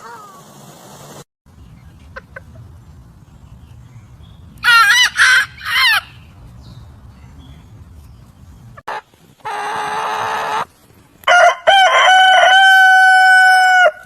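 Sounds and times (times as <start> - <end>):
rooster crowing: 4.6 - 6.4, 11.3 - 14.0.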